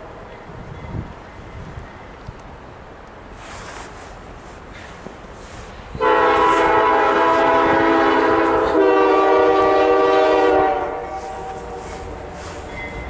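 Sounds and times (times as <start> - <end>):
train running noise: 0.0 - 13.0
locomotive air horn blast: 6.0 - 12.7.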